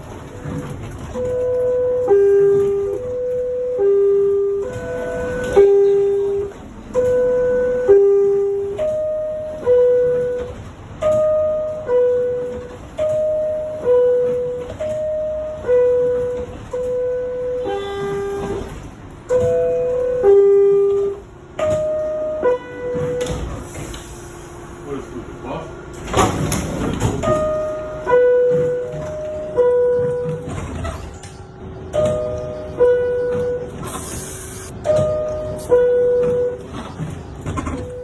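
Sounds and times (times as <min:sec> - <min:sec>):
two-note electronic door chime: 0:31.2 - 0:36.7.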